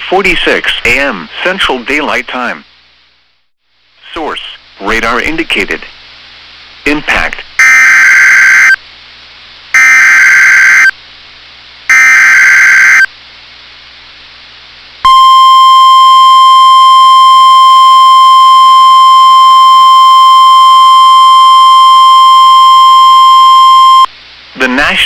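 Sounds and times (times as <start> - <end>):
harsh electronic data bursts: 7.6 - 8.8, 9.8 - 10.9, 11.9 - 13.1
single-pitch alarm tone: 7.6 - 8.8, 9.8 - 10.9, 11.9 - 13.1, 15.1 - 24.1.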